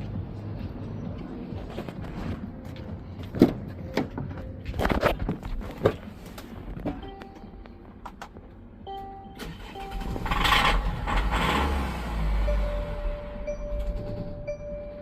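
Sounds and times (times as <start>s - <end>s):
electronic warning tone: 8.9s - 15.0s
diesel engine cranking and running: 9.3s - 15.0s.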